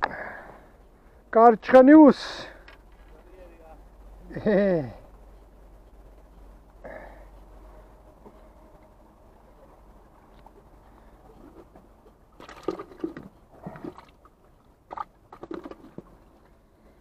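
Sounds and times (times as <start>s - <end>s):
water sloshing against rocks: 11.3s - 16.5s.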